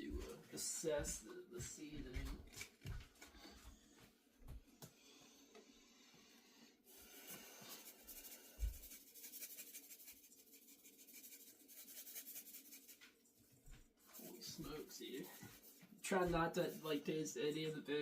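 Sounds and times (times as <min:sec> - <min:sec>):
seasoning shaker rattling: 0:07.4 - 0:13.1.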